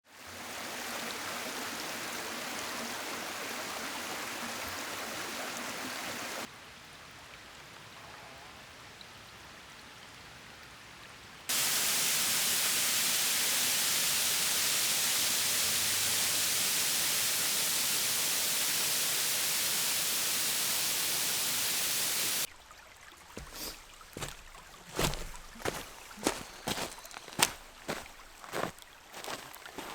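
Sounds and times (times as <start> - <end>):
stream water flowing: 0.1 - 6.5, 21.0 - 29.9.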